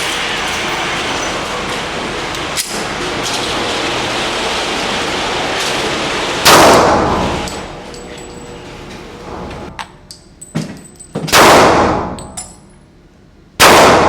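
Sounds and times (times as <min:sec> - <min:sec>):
loud bang ringing out: 0:06.4 - 0:07.4.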